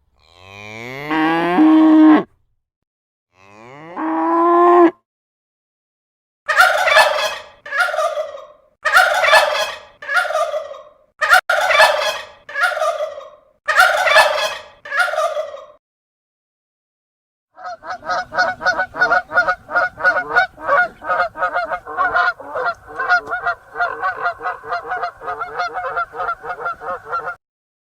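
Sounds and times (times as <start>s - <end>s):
geese honking: 6.5s - 15.6s, 17.6s - 27.4s
turkey gobbling: 6.5s - 15.8s, 17.6s - 27.4s.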